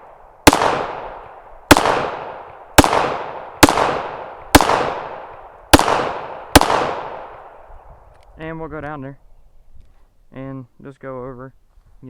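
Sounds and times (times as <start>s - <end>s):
pistol shots with ringing echo: 0.0s - 7.7s.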